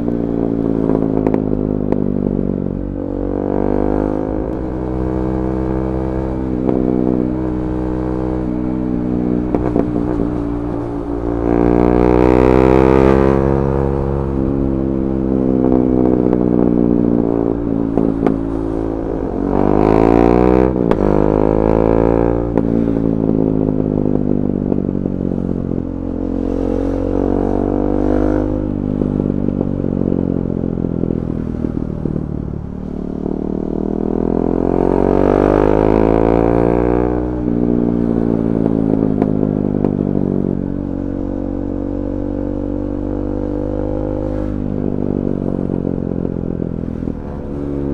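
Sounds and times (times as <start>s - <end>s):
exhaust popping and crackling: 0.0s - 3.7s, 4.3s - 43.6s
motorcycle engine revving: 0.0s - 47.9s.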